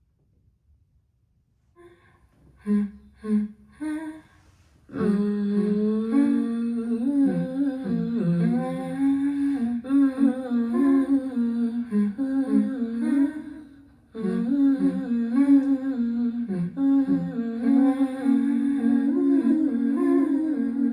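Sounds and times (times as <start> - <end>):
layered voices humming: 4.9 - 20.9.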